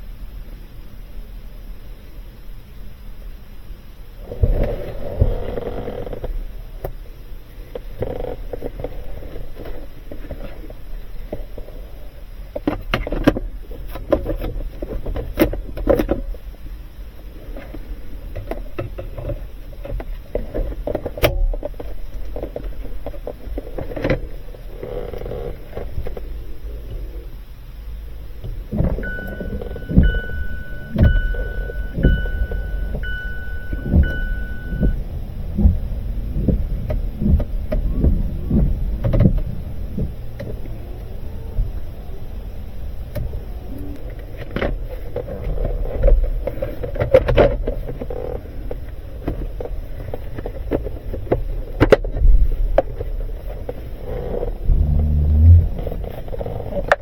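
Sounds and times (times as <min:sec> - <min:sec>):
vehicle warning chime beeping: 0:28.8 - 0:36.6.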